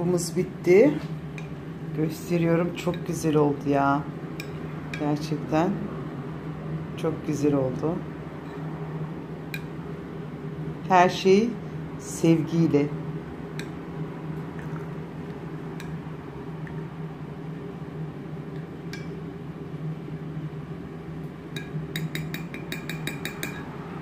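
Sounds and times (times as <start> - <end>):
steady low hum: 0.0 - 24.0
spoon clinking against glass: 21.6 - 23.7.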